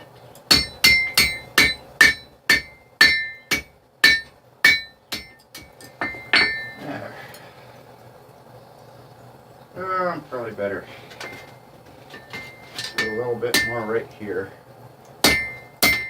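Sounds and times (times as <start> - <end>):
hammer striking steel on anvil: 0.5 - 6.8, 12.2 - 13.9, 15.2 - 16.0.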